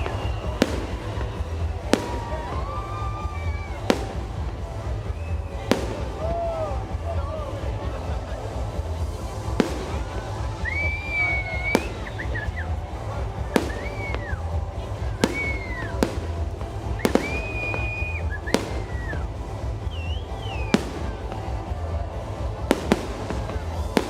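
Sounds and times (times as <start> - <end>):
firework whistling: 0.0 - 6.8, 9.5 - 12.8, 13.4 - 21.7
firework bangs: 0.0 - 7.0, 7.6 - 24.0.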